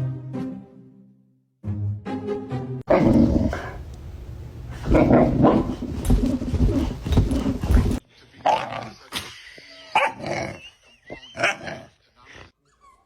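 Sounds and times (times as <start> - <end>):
dog vocalizing: 2.9 - 8.0.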